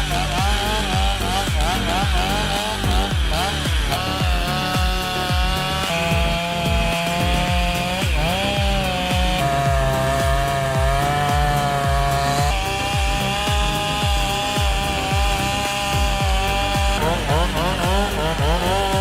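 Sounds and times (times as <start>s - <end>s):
background music with kick drum: 0.0s - 19.0s
chainsaw engines revving: 0.0s - 19.0s.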